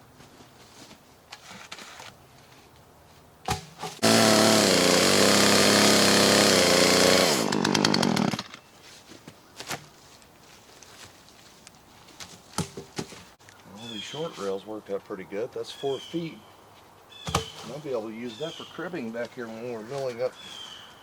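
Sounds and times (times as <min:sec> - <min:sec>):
chainsaw cutting log: 0:03.5 - 0:08.6, 0:17.3 - 0:17.8.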